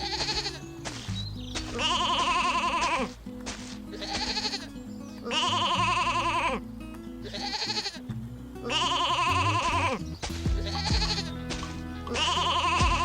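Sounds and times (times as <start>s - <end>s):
sheep bleating: 0.0s - 0.7s, 1.7s - 3.2s, 3.9s - 6.6s, 7.2s - 13.0s
background music: 8.6s - 13.0s.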